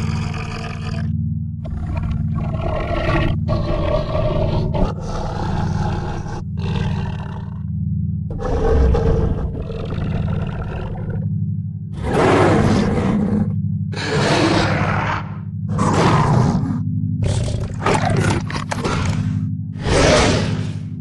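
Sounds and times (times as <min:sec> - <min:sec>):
low drone: 0:00.0 - 0:21.0.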